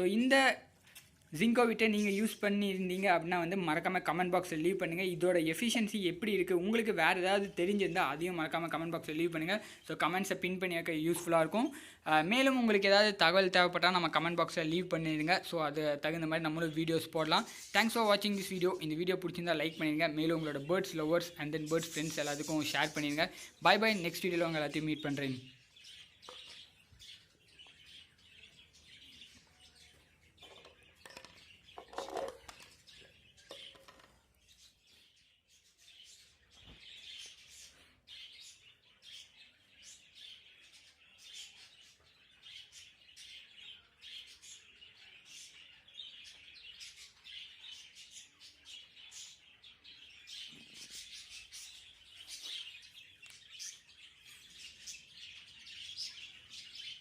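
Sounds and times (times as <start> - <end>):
budgerigars chattering and chirping: 13.6 - 57.0.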